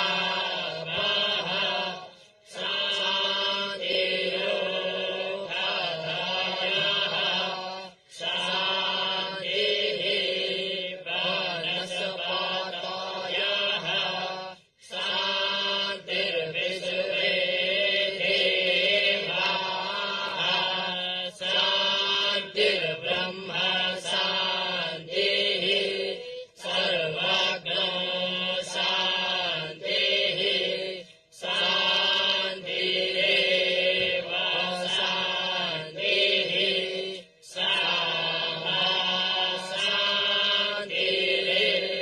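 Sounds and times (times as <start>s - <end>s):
person chanting: 0.0s - 42.0s.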